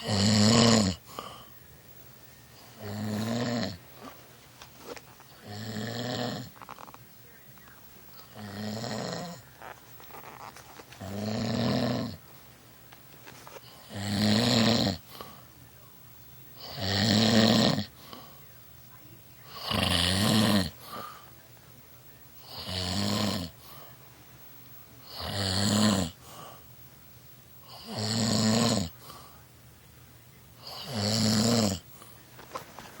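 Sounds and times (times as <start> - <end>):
man snoring: 0.0 - 1.5, 2.6 - 4.1, 5.3 - 7.0, 8.2 - 9.5, 11.0 - 12.2, 13.6 - 15.4, 16.6 - 18.2, 19.5 - 21.2, 22.4 - 23.8, 25.0 - 26.6, 27.6 - 29.2, 30.6 - 32.0.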